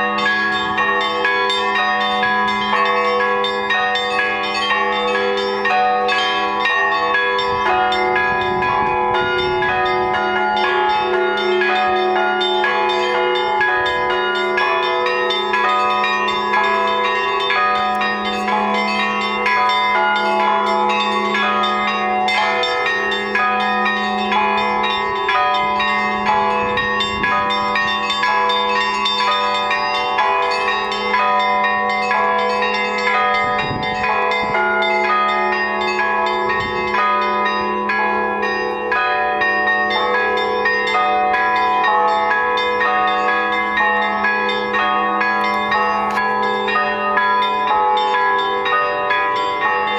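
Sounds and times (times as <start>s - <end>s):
large bell hum: 0.0s - 49.9s
small church bells striking: 0.0s - 49.9s.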